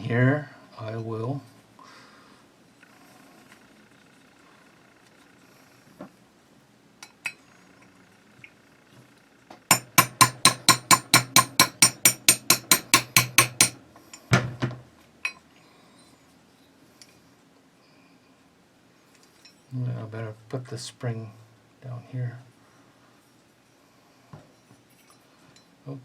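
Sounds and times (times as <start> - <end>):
hammer tapping pin punch: 9.7 - 13.8.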